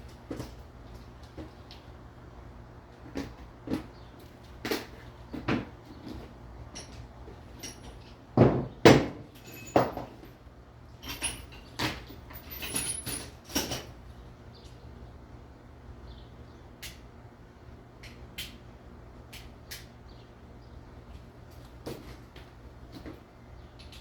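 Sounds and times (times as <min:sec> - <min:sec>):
hand tools clinking on metal: 0:06.7 - 0:08.2, 0:09.3 - 0:10.4, 0:11.0 - 0:14.0.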